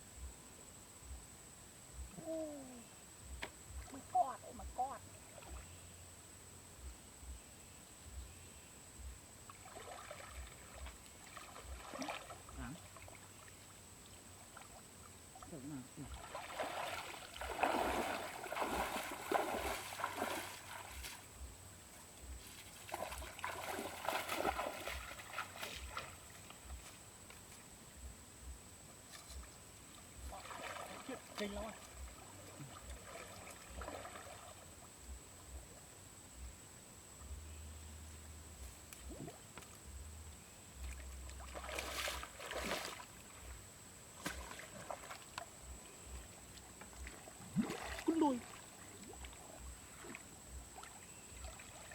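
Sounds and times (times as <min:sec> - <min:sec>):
shallow water splashing: 0:09.5 - 0:13.8, 0:14.4 - 0:21.5, 0:22.3 - 0:26.8, 0:29.1 - 0:35.0, 0:40.8 - 0:51.9.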